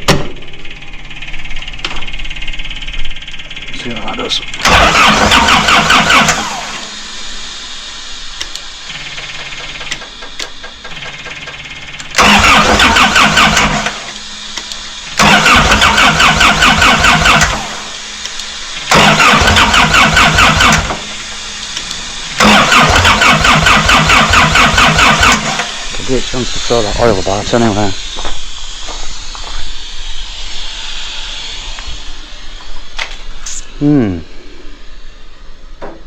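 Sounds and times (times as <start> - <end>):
diesel engine cranking on starter: 3.2 - 29.2.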